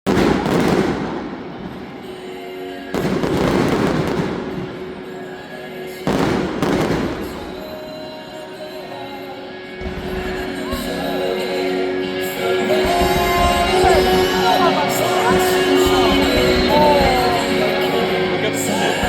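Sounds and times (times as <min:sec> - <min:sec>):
fireworks booms: 0:00.1 - 0:02.2, 0:02.9 - 0:05.1, 0:06.0 - 0:07.9.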